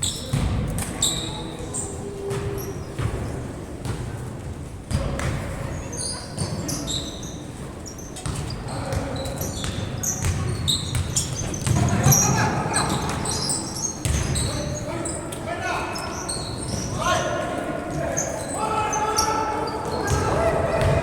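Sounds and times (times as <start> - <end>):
sneaker squeaks: 0.0 - 4.1, 4.9 - 21.0
voices echoing in hall: 0.0 - 21.0
basketball bouncing on court: 0.2 - 1.0, 2.3 - 4.1, 8.2 - 14.6, 19.9 - 21.0.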